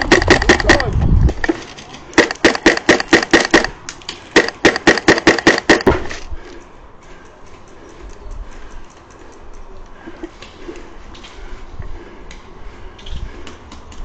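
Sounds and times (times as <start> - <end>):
airsoft rifle shots: 0.0 - 1.6, 2.2 - 6.2.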